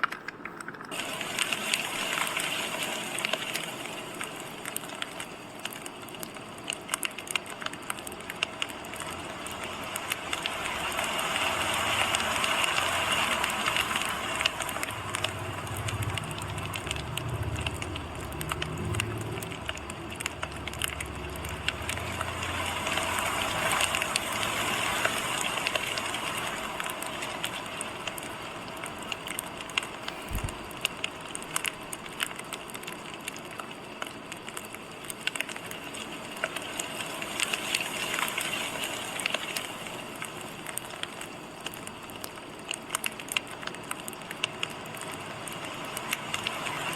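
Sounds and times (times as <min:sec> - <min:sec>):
fire crackling and popping: 0:00.0 - 0:46.9
low rumble: 0:14.4 - 0:23.2.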